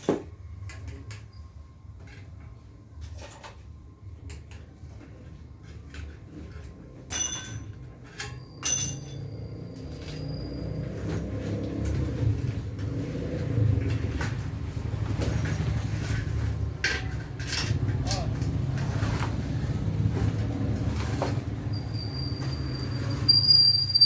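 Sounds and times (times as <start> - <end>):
long noises with high ringing: 8.2 - 10.1.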